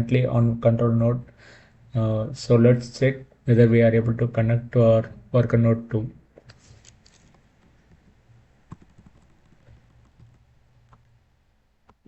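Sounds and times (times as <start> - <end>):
low background hum: 0.0 - 12.0
computer keyboard typing: 8.7 - 10.4.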